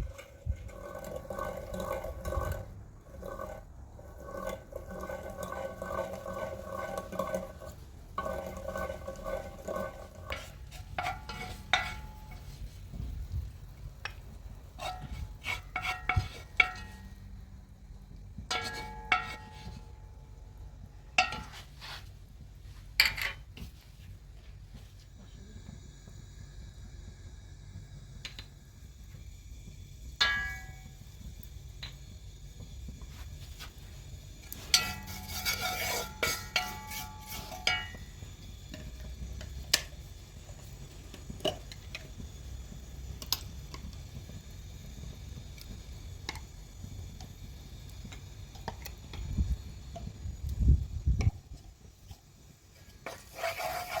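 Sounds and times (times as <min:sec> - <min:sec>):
rhythmic ringing metal scrape: 0:00.0 - 0:23.5, 0:28.9 - 0:31.5, 0:32.5 - 0:42.0, 0:52.7 - 0:54.0.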